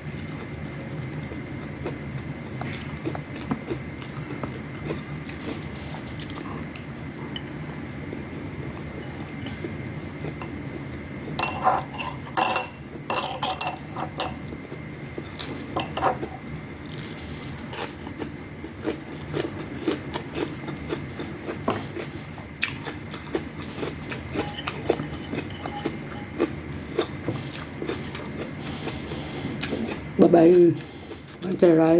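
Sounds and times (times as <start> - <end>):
dishware clinking and scraping: 11.4 - 14.5, 15.8 - 16.4, 21.7 - 22.0, 24.4 - 26.5.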